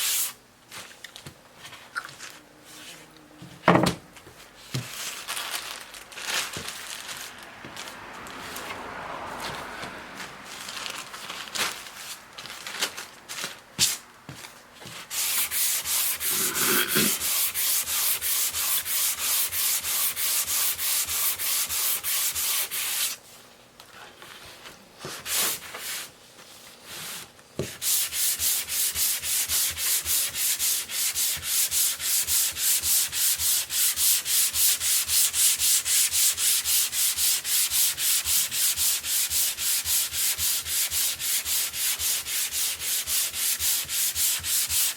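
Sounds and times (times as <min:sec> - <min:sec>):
sandpaper rubbing on wood: 0:14.9 - 0:23.2, 0:27.0 - 0:44.9.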